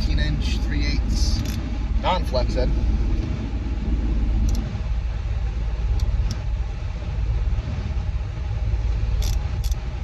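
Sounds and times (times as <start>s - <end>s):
vehicle rumble: 0.0s - 10.0s.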